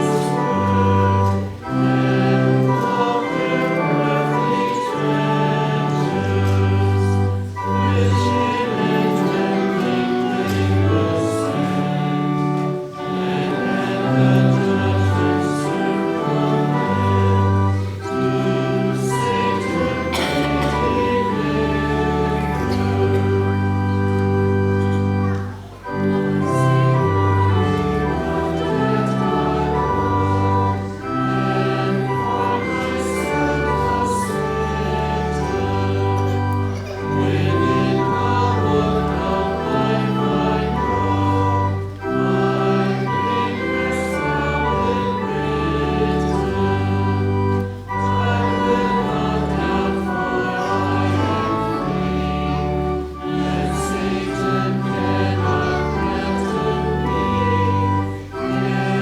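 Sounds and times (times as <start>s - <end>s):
organ chords: 0.0s - 59.0s
voices singing a hymn: 0.0s - 59.0s.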